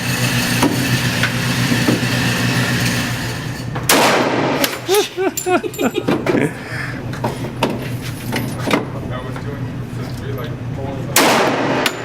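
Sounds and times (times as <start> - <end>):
steady low hum: 0.0 - 12.0
gunshot: 3.9 - 4.7, 11.2 - 12.0.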